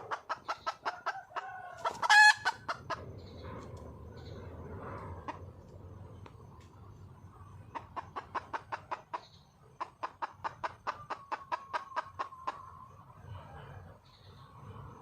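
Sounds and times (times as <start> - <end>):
hen clucking rapidly: 0.0 - 3.2, 7.6 - 12.9.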